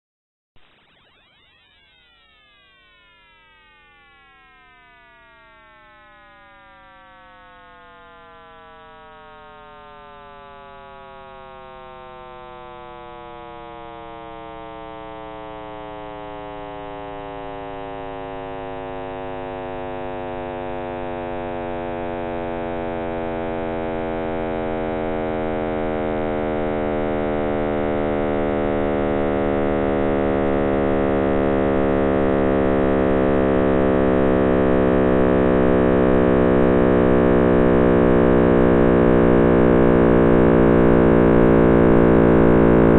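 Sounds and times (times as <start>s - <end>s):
dense drone sliding downward: 28.2s - 42.9s.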